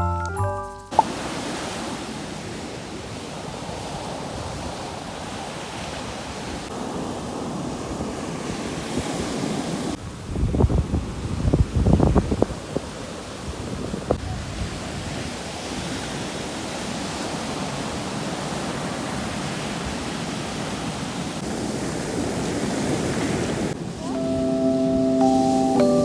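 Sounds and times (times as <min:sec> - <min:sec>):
sea waves washing on beach: 0:00.9 - 0:26.0
wind buffeting microphone: 0:02.5 - 0:16.0.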